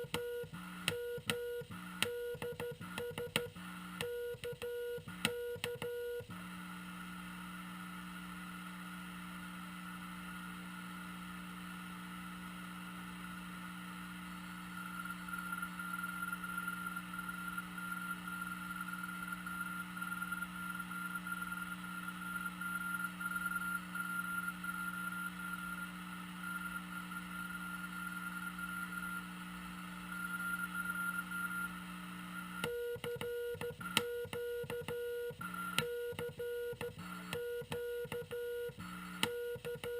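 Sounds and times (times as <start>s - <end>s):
morse code beeps: 32.6s - 39.9s.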